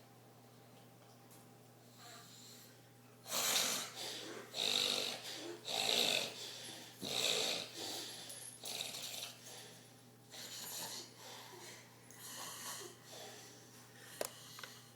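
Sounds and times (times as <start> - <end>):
man snoring: 3.4 - 6.4, 7.0 - 7.8.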